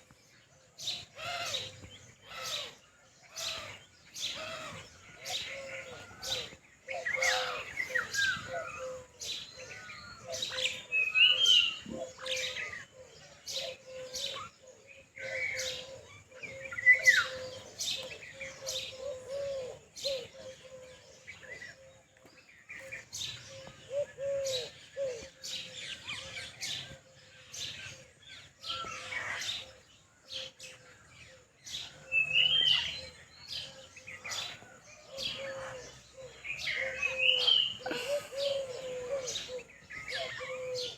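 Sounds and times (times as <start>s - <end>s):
lovebirds chirping and chattering: 0.0s - 40.9s.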